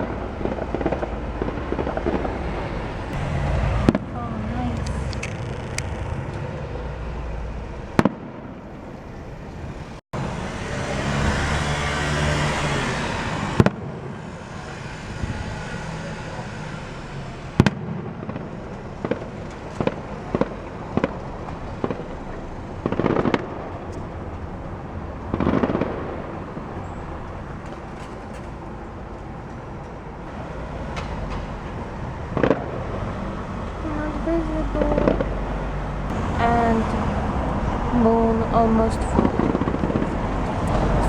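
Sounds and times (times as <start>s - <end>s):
fireworks pops and crackling: 0.0s - 2.7s, 4.8s - 6.5s, 17.6s - 24.4s, 25.2s - 26.7s, 32.3s - 32.8s
steady background rumble: 0.0s - 10.0s, 17.8s - 41.0s
fireworks bangs: 0.0s - 33.7s, 34.4s - 41.0s.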